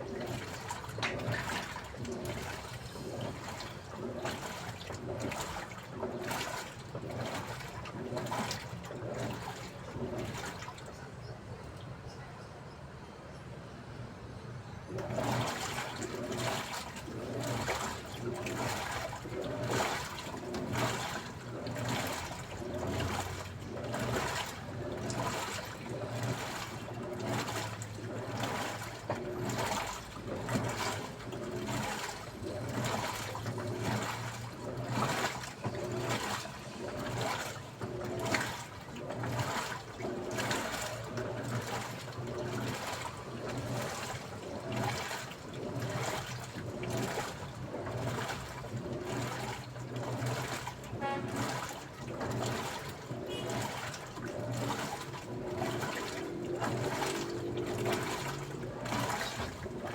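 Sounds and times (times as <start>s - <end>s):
low motor hum: 0.0s - 11.1s, 14.8s - 59.9s
water sloshing in washing machine: 0.0s - 12.1s, 14.7s - 59.9s.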